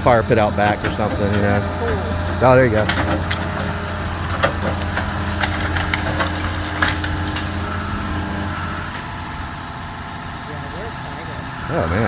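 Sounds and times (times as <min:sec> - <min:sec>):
machine engine running: 0:00.0 - 0:12.0
wood cracking and crunching: 0:00.5 - 0:09.4.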